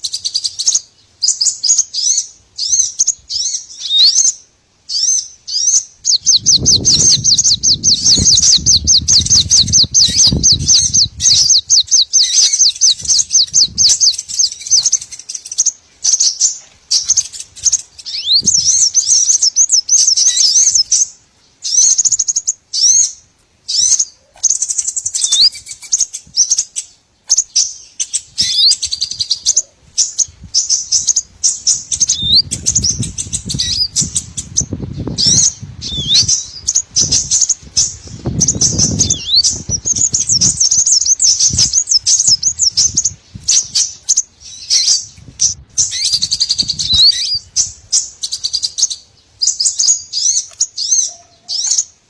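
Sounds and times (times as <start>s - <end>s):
bird chirps: 0.0s - 52.0s
swooping bird whistles: 4.9s - 21.0s, 27.3s - 34.5s, 35.2s - 51.8s.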